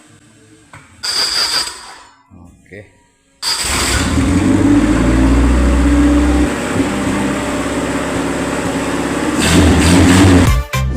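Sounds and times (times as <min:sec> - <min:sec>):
engine running steadily: 0:03.7 - 0:10.5.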